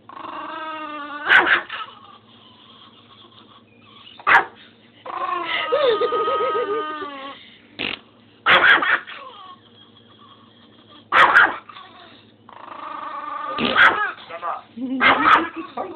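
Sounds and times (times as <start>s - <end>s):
dog whining: 0.0s - 7.4s, 8.5s - 14.4s
dog wheezing: 1.2s - 8.0s, 8.6s - 14.3s.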